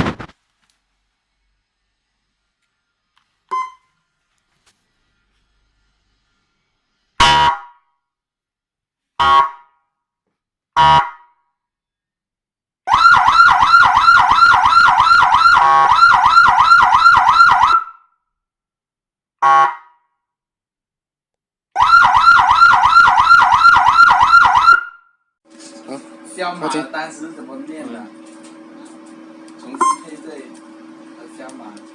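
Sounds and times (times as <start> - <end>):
siren horn blasts: 7.2 - 7.8, 9.2 - 9.6, 10.8 - 11.2, 12.9 - 18.0, 19.4 - 19.9, 21.8 - 25.0, 29.6 - 30.2.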